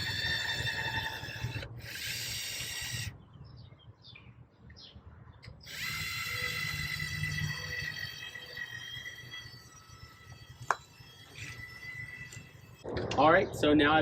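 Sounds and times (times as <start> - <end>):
electric caulking gun motor whining: 0.0 - 3.1, 5.5 - 12.8.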